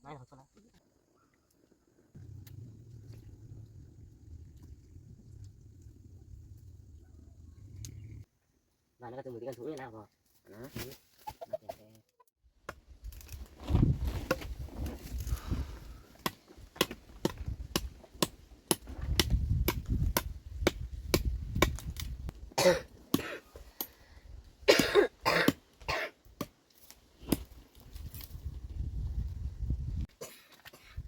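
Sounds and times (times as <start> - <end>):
low rumble: 2.2 - 8.3
person coughing: 22.6 - 23.5, 24.7 - 26.2, 30.2 - 31.0.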